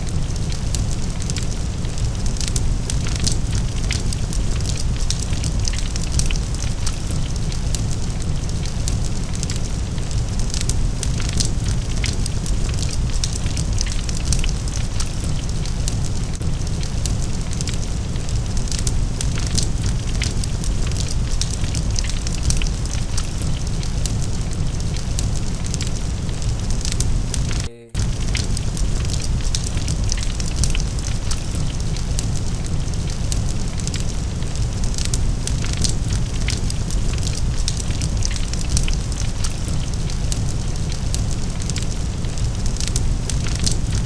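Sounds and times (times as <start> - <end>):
fire crackling and popping: 0.0 - 44.0
fire rumbling: 0.0 - 44.0.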